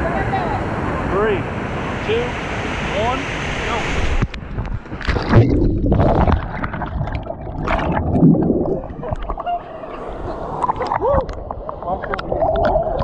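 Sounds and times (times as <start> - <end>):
water splashing and gurgling: 3.9 - 13.0.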